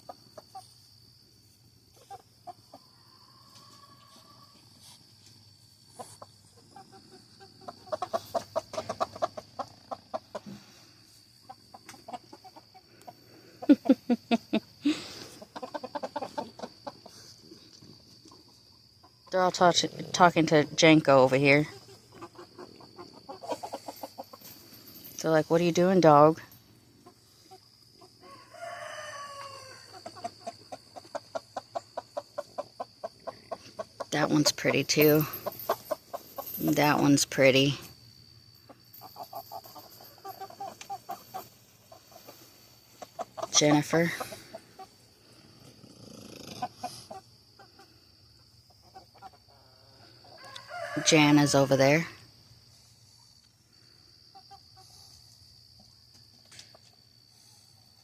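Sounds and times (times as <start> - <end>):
chickens clucking: 0.0 - 1.0, 1.6 - 20.6, 21.5 - 45.8, 46.4 - 52.0, 54.2 - 57.2
rooster crowing: 28.2 - 30.0, 50.3 - 51.9.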